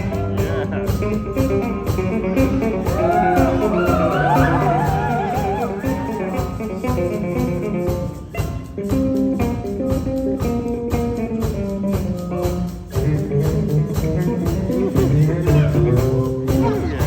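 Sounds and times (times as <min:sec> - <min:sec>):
bass guitar: 0:00.0 - 0:17.0
saxophone section playing jazz: 0:00.4 - 0:08.8
sliding saxophone line: 0:02.2 - 0:07.3.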